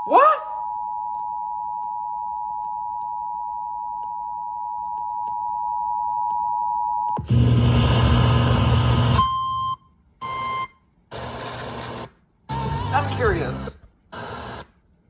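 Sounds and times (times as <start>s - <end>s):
harsh two-tone alert signal: 12.5s - 13.8s.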